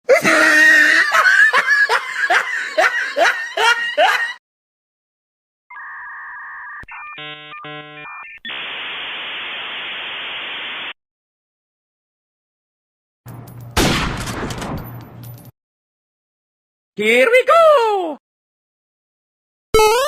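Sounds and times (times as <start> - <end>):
static hiss: 8.5 - 11.0
two-tone electronic beep: 19.8 - 20.0.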